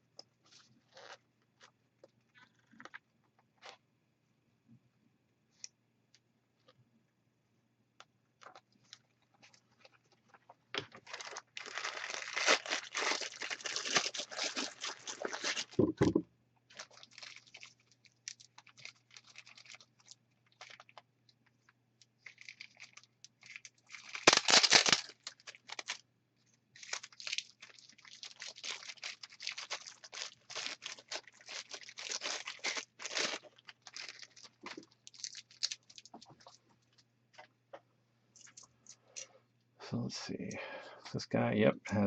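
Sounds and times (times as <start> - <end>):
packaging crinkling and rustling: 8.4 - 26.0, 26.8 - 37.5.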